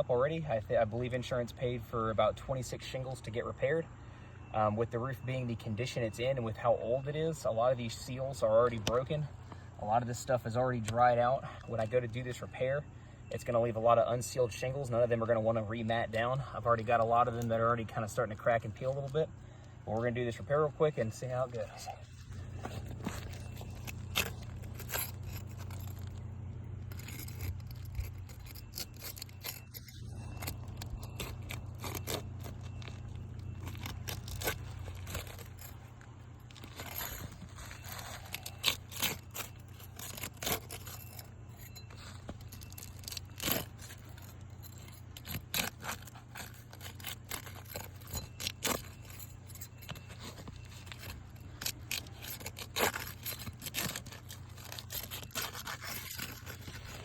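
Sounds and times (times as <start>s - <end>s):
low steady hum: 0.0s - 57.0s
scraping shingles: 14.9s - 57.0s
sharp clicks of shingles: 15.8s - 57.0s.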